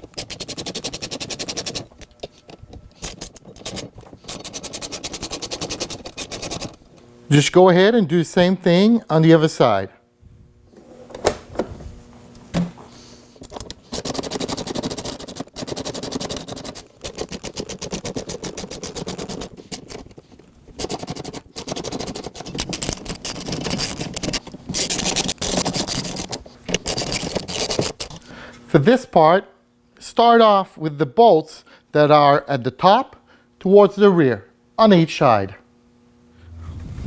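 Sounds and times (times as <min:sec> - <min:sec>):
ratchet clicking rapidly: 0:00.0 - 0:06.8, 0:13.5 - 0:28.2.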